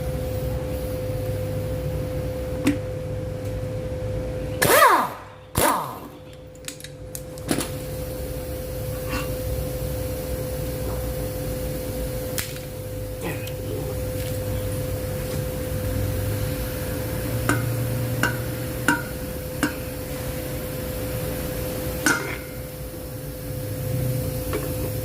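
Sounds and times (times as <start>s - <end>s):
motor hum: 8.0s - 25.0s.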